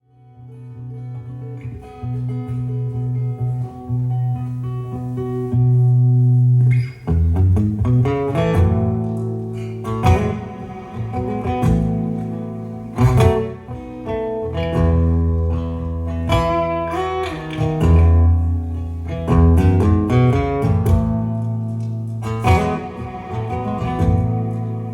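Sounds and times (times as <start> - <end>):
guitar playing: 0.0 - 24.9
strummed guitar chords: 0.1 - 24.9.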